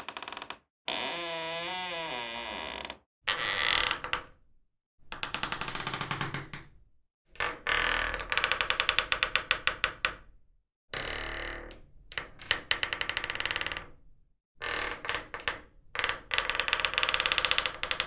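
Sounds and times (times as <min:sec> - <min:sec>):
creaking door hinge: 0:00.0 - 0:03.5.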